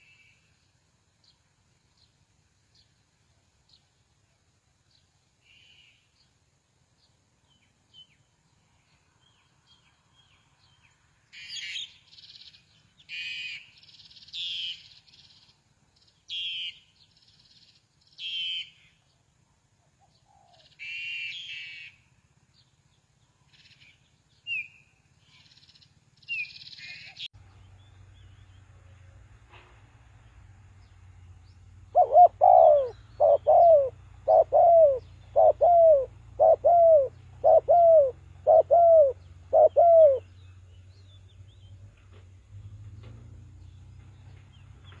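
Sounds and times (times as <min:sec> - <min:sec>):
bird harsh chattering calls: 0:31.9 - 0:40.3.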